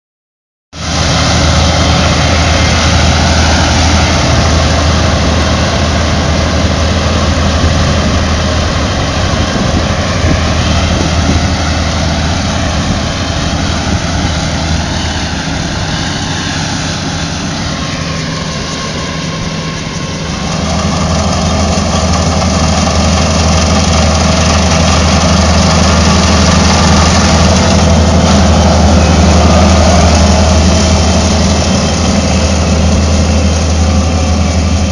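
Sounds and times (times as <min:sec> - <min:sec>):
harvester engine hum: 0:00.8 - 0:34.9
threshing machinery whirring: 0:00.8 - 0:34.9.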